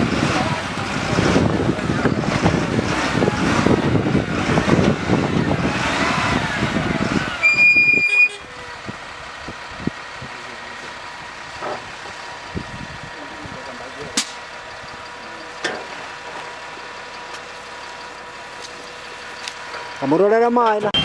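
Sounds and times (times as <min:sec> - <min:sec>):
rumble and clatter: 0:00.0 - 0:07.4
high-pitched beep: 0:07.4 - 0:08.4.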